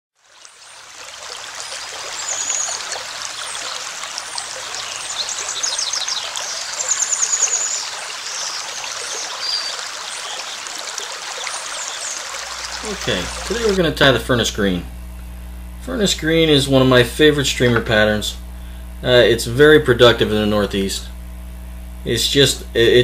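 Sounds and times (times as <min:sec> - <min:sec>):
stream rushing: 0:00.2 - 0:13.8
high bird trills: 0:00.4 - 0:13.8.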